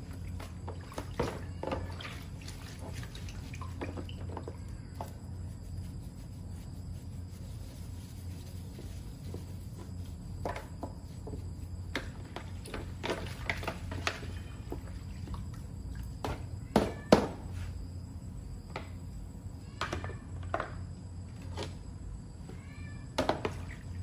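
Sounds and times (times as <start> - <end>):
steady low hum: 0.0 - 16.8.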